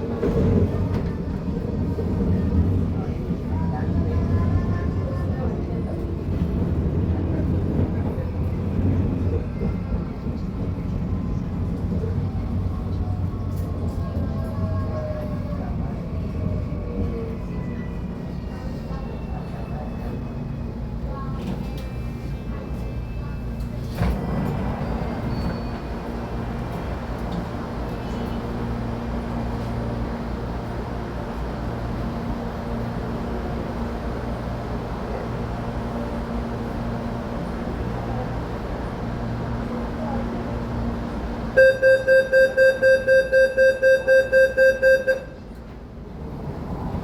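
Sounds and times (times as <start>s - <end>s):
train rumbling and humming: 0.0s - 47.0s
rapid high warning beeps: 41.6s - 45.4s.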